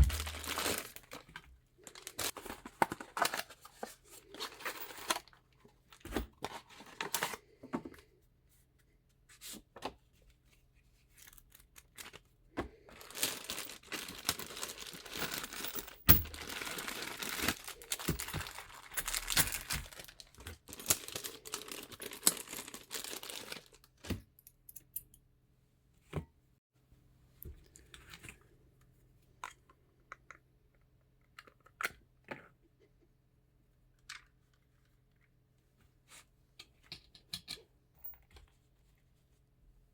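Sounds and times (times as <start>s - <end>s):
packaging crinkling and tearing: 0.0s - 3.6s, 12.9s - 24.1s.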